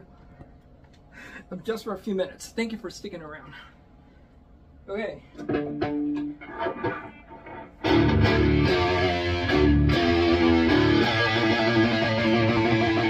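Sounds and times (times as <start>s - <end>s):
distorted electric guitar riff: 5.4s - 13.0s
quiet picked guitar notes: 5.4s - 13.0s.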